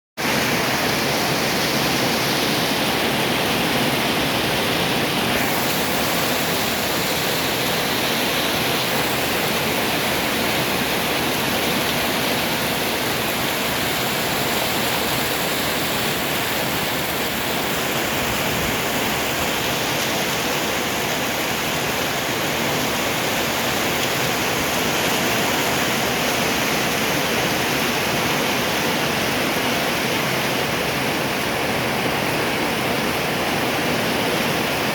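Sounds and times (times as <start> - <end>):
heavy rain falling: 0.2 - 34.9.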